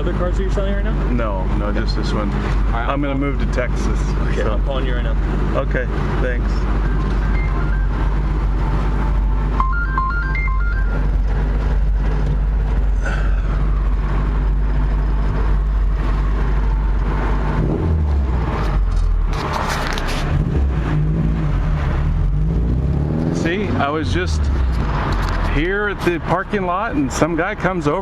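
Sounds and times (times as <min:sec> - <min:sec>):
car engine rumbling: 0:00.0 - 0:28.0
short electronic beeps: 0:06.9 - 0:08.0, 0:09.5 - 0:11.2.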